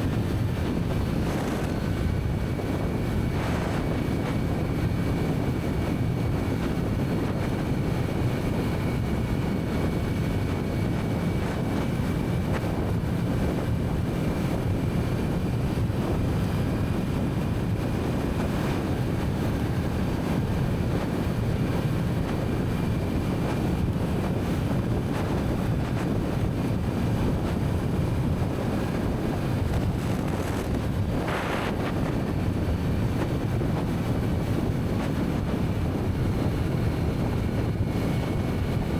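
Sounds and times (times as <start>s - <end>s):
motorcycle engine cruising: 0.0s - 4.4s, 18.1s - 38.8s
wind noise on microphone: 0.0s - 38.9s.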